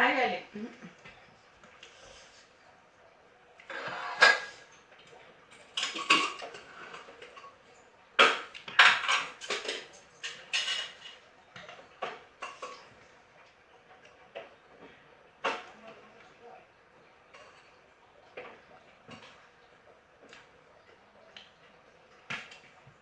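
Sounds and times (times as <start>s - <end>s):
dishes and utensils clinking: 3.7s - 4.7s, 5.6s - 13.0s.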